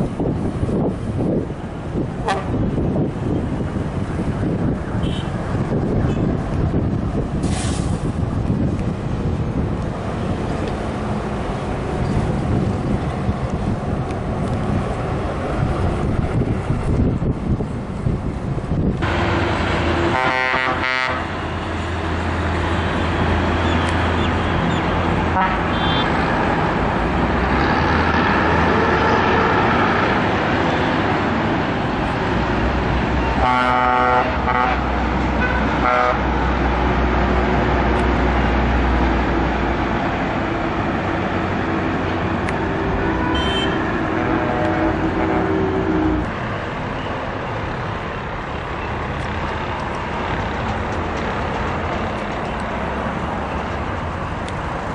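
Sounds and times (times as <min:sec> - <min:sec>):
bus engines droning: 0:00.0 - 0:54.9
traffic: 0:00.0 - 0:54.9
bus horn blasts: 0:02.2 - 0:02.6, 0:05.0 - 0:05.4, 0:20.0 - 0:21.4, 0:25.3 - 0:26.2, 0:33.3 - 0:36.3, 0:42.8 - 0:46.2.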